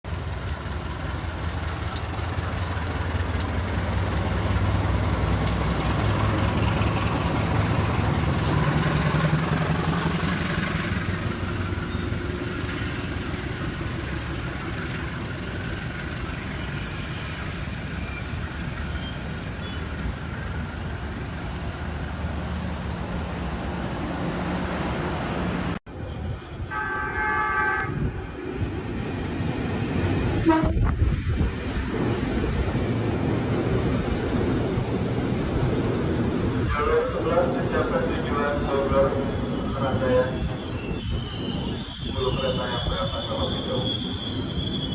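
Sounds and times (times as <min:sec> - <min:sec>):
train rumbling by: 0:00.1 - 0:44.9
train horn: 0:26.6 - 0:28.1, 0:30.4 - 0:30.9.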